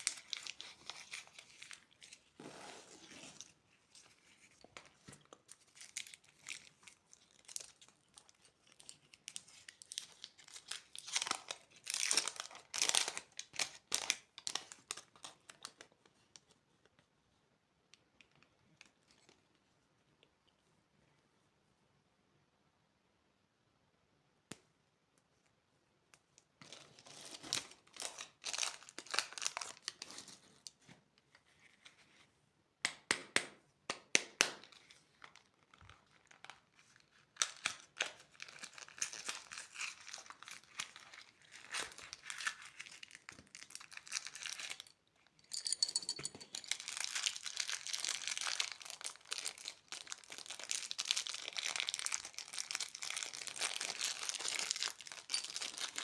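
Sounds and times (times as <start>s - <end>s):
plastic wrappers crinkling: 5.2s - 15.9s, 35.2s - 56.0s.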